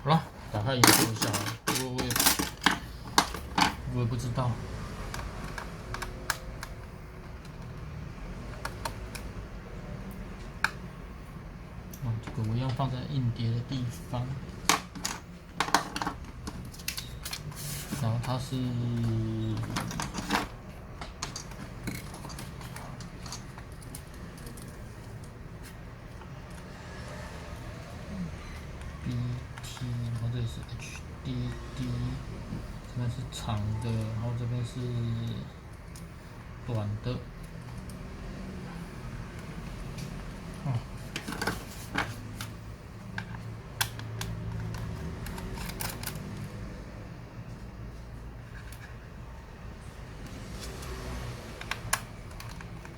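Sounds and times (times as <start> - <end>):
small clicks and taps of parts: 5.1 - 9.4, 39.3 - 46.5, 50.2 - 52.9
small parts clicking and tapping: 18.2 - 26.7, 39.2 - 46.6, 50.2 - 52.9.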